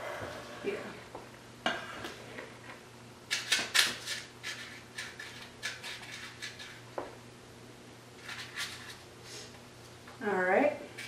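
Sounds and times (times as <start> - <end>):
spoon scraping a bowl: 4.0 - 6.8.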